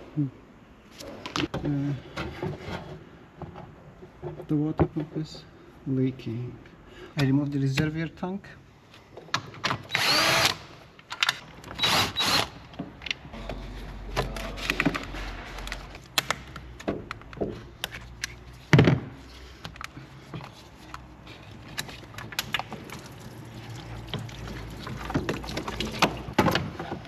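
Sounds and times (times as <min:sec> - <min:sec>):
tools clicking and knocking: 0:21.7 - 0:22.8.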